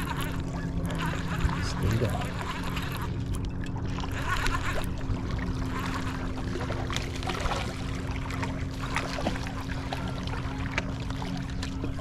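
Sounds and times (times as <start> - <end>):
lake water sloshing at shoreline: 0.0 - 12.0
steady low hum: 0.0 - 12.0.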